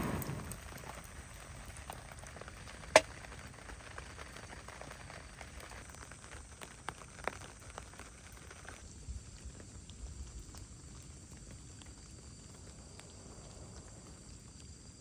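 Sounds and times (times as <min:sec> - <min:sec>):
sharp pops of burning wood: 0:00.0 - 0:03.6
campfire hissing and crackling: 0:00.0 - 0:15.0.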